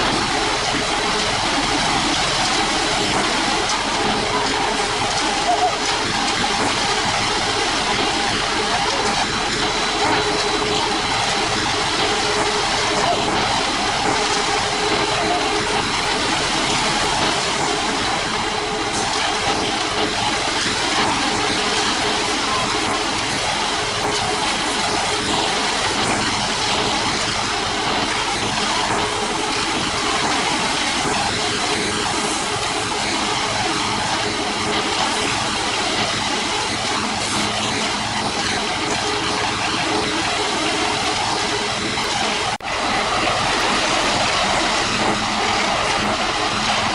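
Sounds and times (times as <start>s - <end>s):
heavy construction machinery running: 0.0s - 46.9s.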